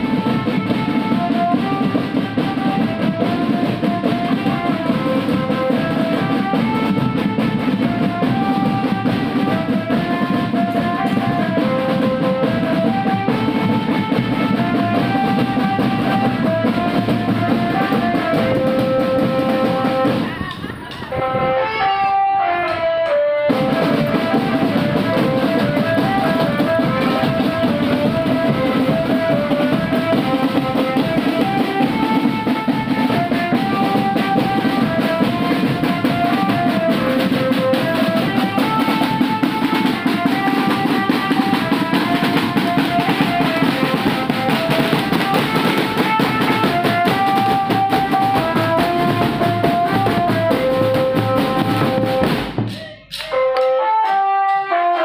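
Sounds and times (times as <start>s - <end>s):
snare and bass drums: 0.0s - 21.0s, 23.5s - 53.4s
held note melody: 21.2s - 52.3s.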